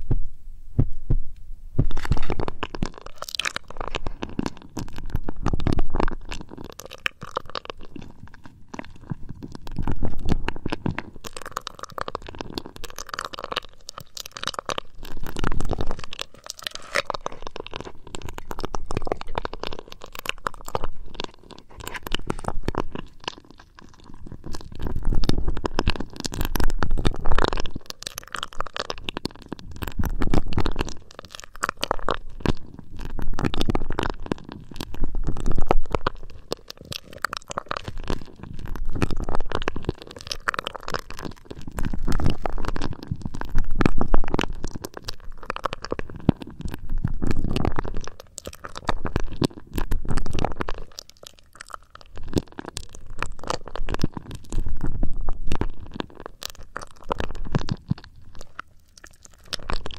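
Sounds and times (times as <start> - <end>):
fingers rubbing on microphone: 0.0 - 6.3.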